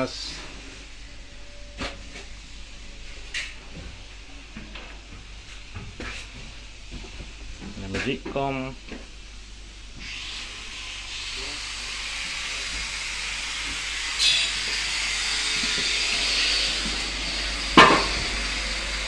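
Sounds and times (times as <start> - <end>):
rushing air hiss: 8.8 - 19.0.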